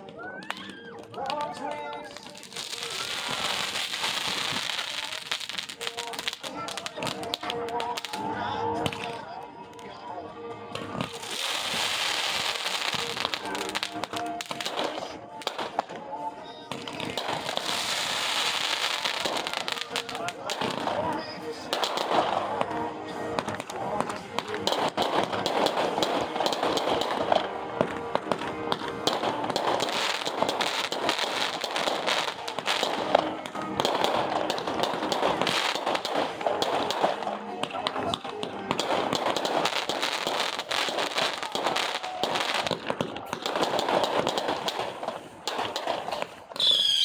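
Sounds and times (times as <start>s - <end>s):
voices: 0.0s - 46.9s
fireworks popping and crackling: 0.0s - 47.0s
music playing: 0.0s - 47.0s
firework high whistle: 46.6s - 47.0s.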